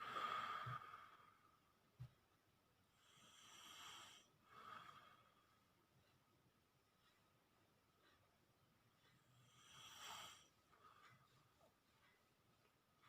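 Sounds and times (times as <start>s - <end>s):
person snoring softly: 0.0s - 1.5s, 2.9s - 5.4s, 9.2s - 11.2s
snort: 9.5s - 10.5s.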